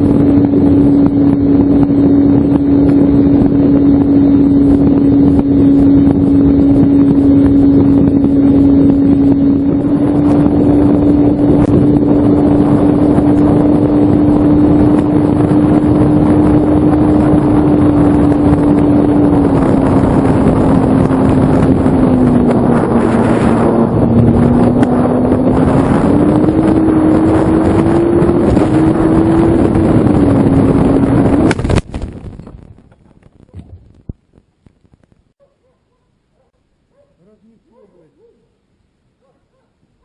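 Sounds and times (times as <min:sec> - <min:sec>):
model plane propeller droning: 0:00.0 - 0:31.6
wind rushing over airframe: 0:00.0 - 0:34.2.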